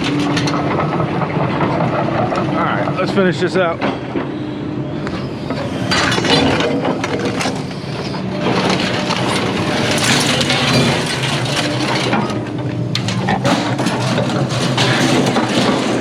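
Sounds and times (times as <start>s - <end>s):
engine hum: 0.0s - 16.0s
scrap metal clattering: 5.6s - 16.0s.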